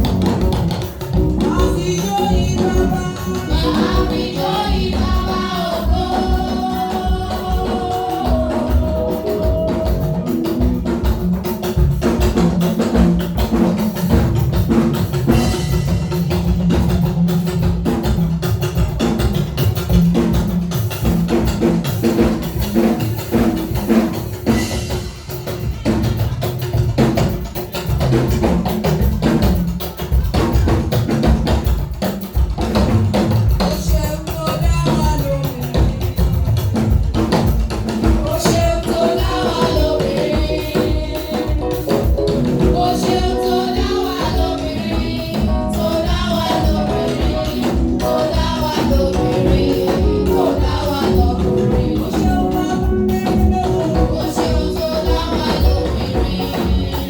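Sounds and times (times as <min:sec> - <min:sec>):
drum kit beat: 0:00.0 - 0:57.0
voices singing: 0:01.4 - 0:11.0, 0:38.0 - 0:57.0.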